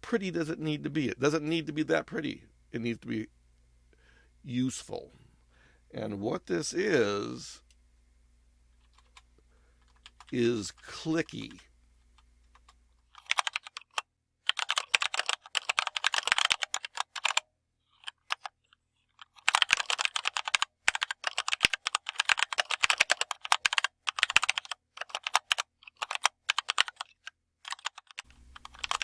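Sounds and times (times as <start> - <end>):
typing on mechanical keyboard: 8.8 - 10.4, 12.5 - 29.0.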